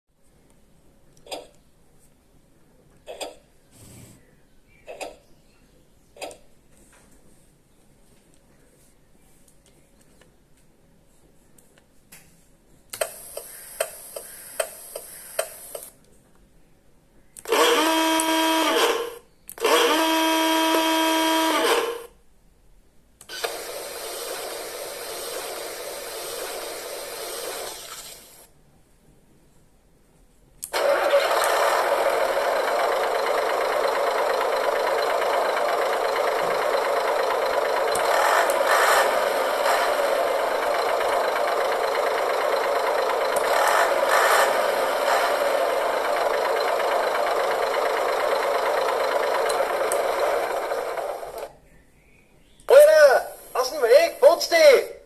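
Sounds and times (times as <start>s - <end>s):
clicking from small speaker: 12.9s - 16.2s, 17.3s - 17.6s, 19.4s - 19.8s
simulated truck engine running: 23.3s - 28.5s, 30.7s - 51.5s
hiss: 23.6s - 28.5s.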